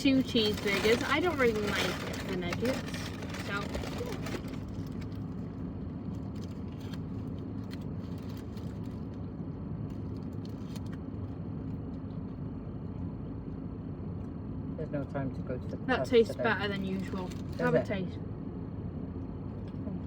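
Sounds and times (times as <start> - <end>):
car rumble inside cabin: 0.0 - 9.1, 14.8 - 18.2
constant hum: 0.0 - 20.0.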